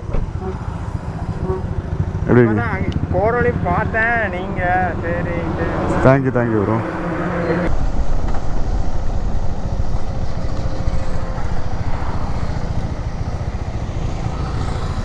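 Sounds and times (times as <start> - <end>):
motorcycle engine rumble: 0.0 - 15.0
wind noise on microphone: 6.8 - 15.0.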